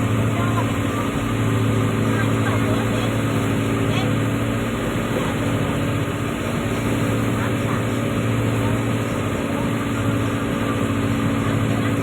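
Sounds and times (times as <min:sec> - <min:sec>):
diesel engine droning: 0:00.0 - 0:12.0.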